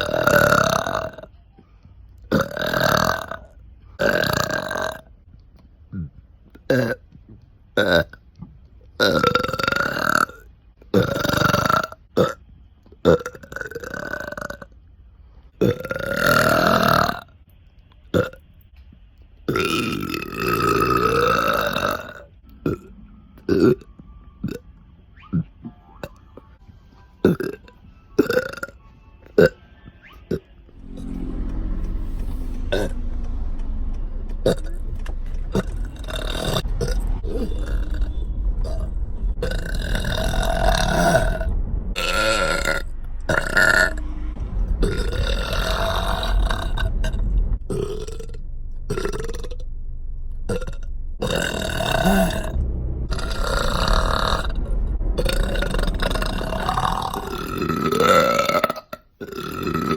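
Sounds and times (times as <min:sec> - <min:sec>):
low prolonged belching: 0:00.0 - 0:01.3, 0:02.3 - 0:05.1, 0:09.0 - 0:12.4, 0:13.0 - 0:14.8, 0:15.6 - 0:17.2, 0:19.5 - 0:24.6, 0:30.8 - 0:49.7, 0:50.3 - 0:59.9.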